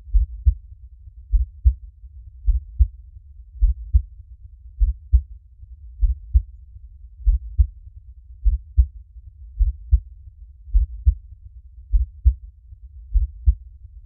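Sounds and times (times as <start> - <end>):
faint low rumble: 0.0 - 14.0
heartbeat double thump: 0.1 - 0.6, 3.6 - 4.0, 10.7 - 11.2, 13.1 - 13.6.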